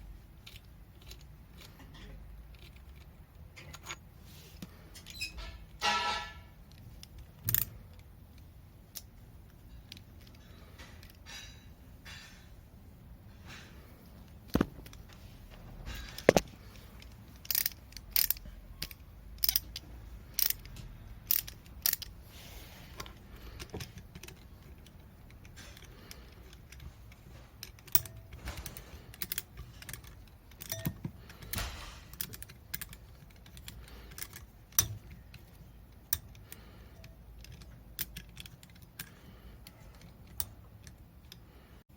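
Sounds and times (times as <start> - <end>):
metal tools clinking: 25.4 - 35.5.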